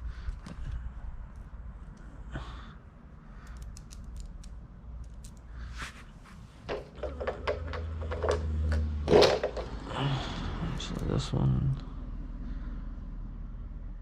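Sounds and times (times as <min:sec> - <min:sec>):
light clicks of small bolts: 0:03.3 - 0:05.6.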